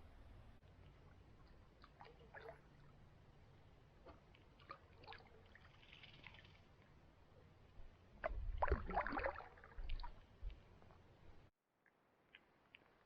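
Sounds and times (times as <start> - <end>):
water splashing around a canoe: 1.1 - 2.9, 4.0 - 6.9, 8.2 - 10.3.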